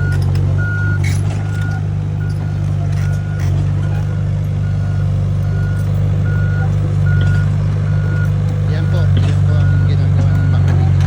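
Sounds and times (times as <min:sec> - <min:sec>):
short clanks: 0:00.0 - 0:04.2
travel alarm beeping: 0:00.0 - 0:10.9
excavator diesel engine running: 0:00.0 - 0:11.0.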